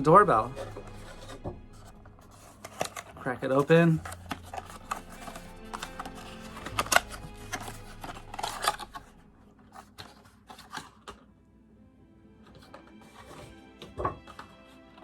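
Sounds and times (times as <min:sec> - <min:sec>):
soft background music: 0:00.0 - 0:15.0.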